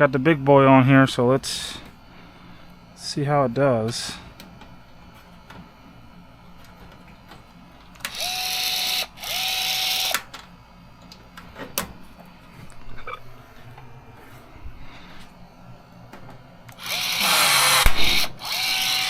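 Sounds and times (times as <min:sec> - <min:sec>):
rivet tool motor whine: 0:08.0 - 0:10.2, 0:16.7 - 0:19.0.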